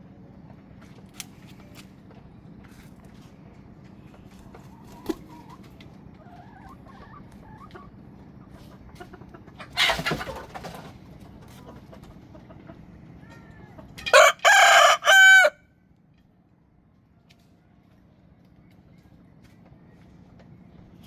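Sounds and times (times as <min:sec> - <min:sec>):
rooster crowing: 0:14.1 - 0:15.6.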